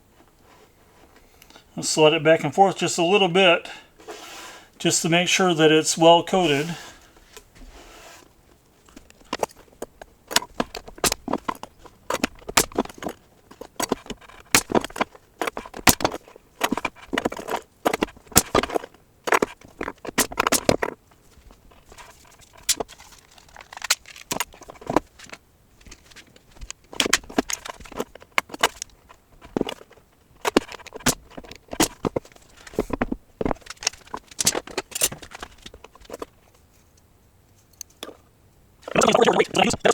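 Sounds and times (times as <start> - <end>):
wooden boards clicking and knocking: 8.9 - 36.3.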